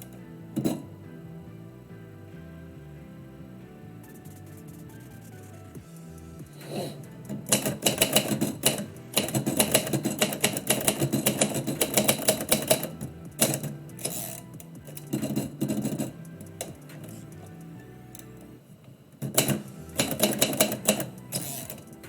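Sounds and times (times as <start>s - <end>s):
background music: 0.0s - 22.0s
typewriter typing: 6.5s - 17.6s, 19.2s - 22.0s.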